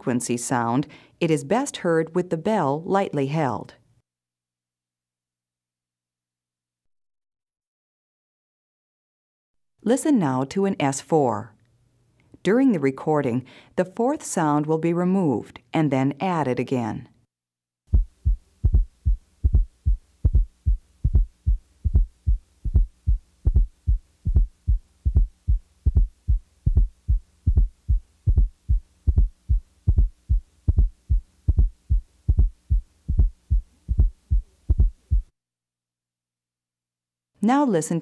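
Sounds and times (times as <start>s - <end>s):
heartbeat thuds through stethoscope: 17.9s - 35.3s
low-pitched atrial gallop sound: 17.9s - 35.3s.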